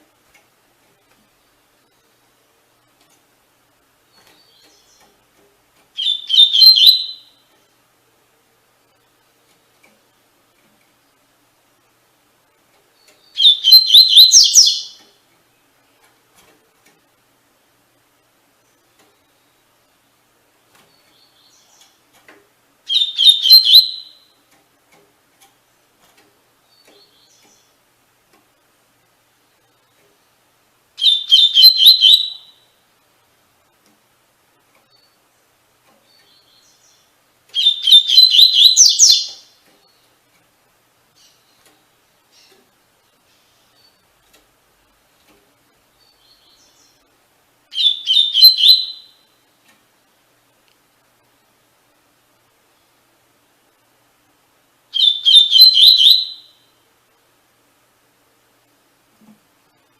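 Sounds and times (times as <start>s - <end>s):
bird singing high notes: 6.0s - 7.4s, 22.9s - 24.4s, 31.0s - 32.6s, 37.6s - 39.4s, 47.7s - 49.3s, 55.0s - 56.6s.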